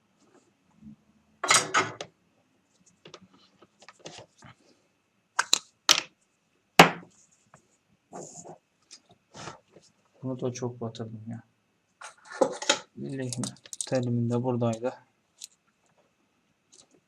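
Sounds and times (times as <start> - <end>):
small tools clattering on workbench: 12.0 - 14.1.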